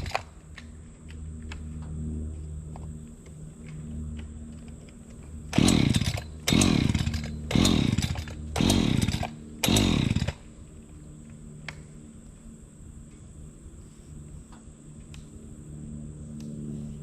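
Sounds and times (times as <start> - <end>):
chainsaw idling and revving: 0.0 - 0.3, 5.5 - 10.5.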